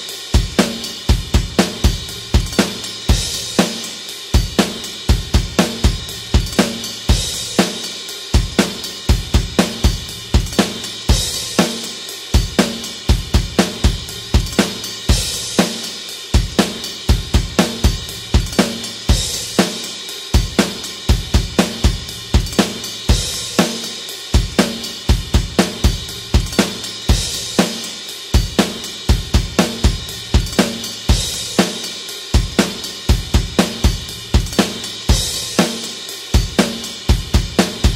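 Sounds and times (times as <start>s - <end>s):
hi-hat and cymbals: 0.0s - 37.9s
snare drum: 0.0s - 37.9s
kick drum: 0.4s - 3.5s, 4.4s - 7.5s, 8.4s - 11.4s, 12.4s - 15.5s, 16.4s - 19.5s, 20.4s - 23.5s, 24.4s - 27.6s, 28.4s - 31.6s, 32.4s - 35.5s, 36.4s - 37.9s.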